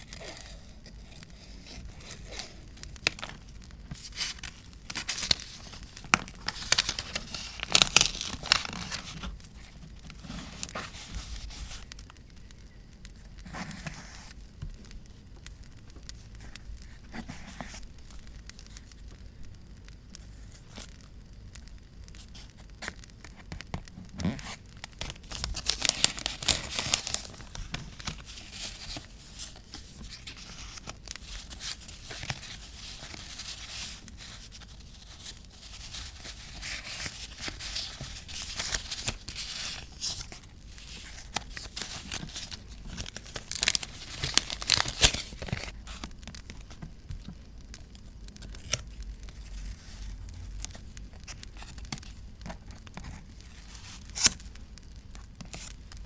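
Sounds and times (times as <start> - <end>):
paper tearing and crinkling: 0.0 - 11.8, 24.2 - 46.4, 48.5 - 54.5.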